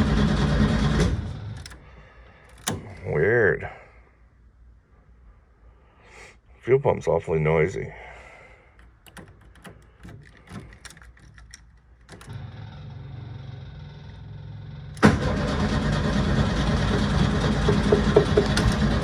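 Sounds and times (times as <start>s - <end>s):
electric fuel pump hum: 12.3s - 19.0s
clicks: 15.0s - 19.0s
starter cranking engine: 15.0s - 19.0s.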